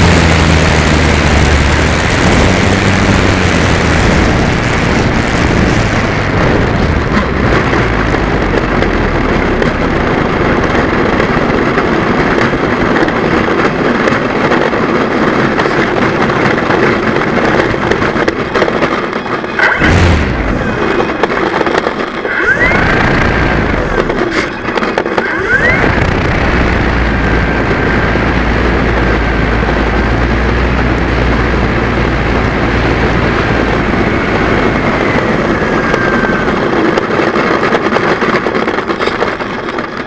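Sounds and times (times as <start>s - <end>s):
wind rushing over microphone: 0.0s - 40.0s
electric motor hum: 22.2s - 24.4s, 25.2s - 36.7s.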